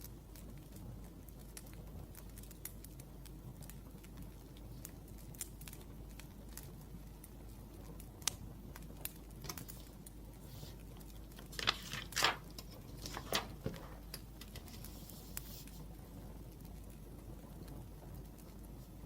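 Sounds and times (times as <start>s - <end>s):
wood fire crackling and popping: 0.0s - 19.0s
scratchy rustles: 9.5s - 15.9s.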